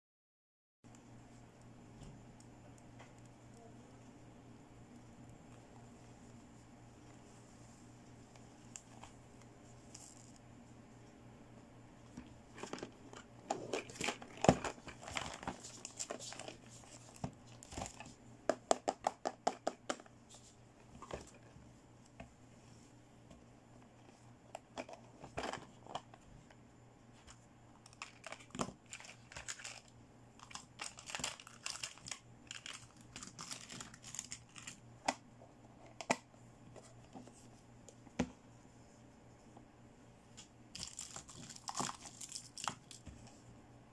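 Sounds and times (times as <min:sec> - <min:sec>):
plastic packaging crinkling and tearing: 0:27.8 - 0:34.8, 0:40.8 - 0:43.0.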